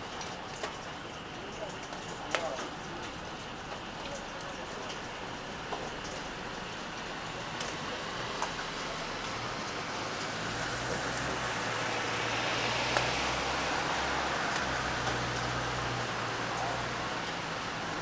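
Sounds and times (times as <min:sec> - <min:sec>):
steady rain falling: 0:00.0 - 0:18.0
water drips: 0:00.0 - 0:18.0
vehicle passing on wet road: 0:07.6 - 0:18.0.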